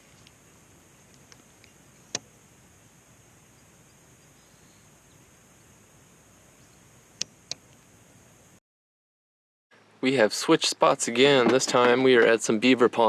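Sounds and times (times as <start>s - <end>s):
high-pitched hiss: 0.0s - 8.6s.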